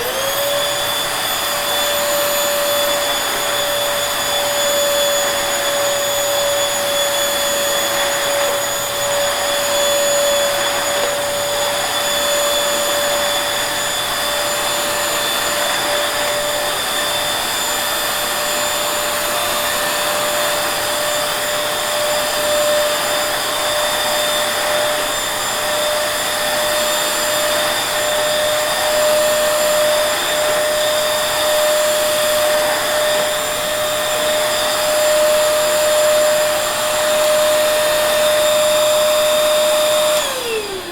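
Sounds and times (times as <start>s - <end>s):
vacuum cleaner running: 0.0s - 40.9s.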